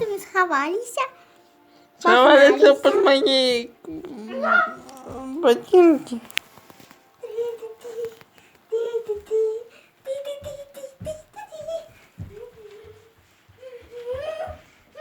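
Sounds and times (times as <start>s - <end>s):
person humming a tune: 3.8s - 5.5s, 7.2s - 14.6s.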